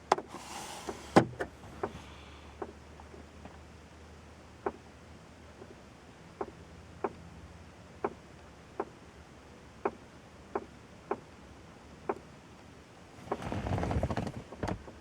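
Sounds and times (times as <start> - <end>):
sharp tapping in dashboard: 1.2 - 2.0, 4.6 - 4.9, 8.8 - 9.0, 9.8 - 11.4.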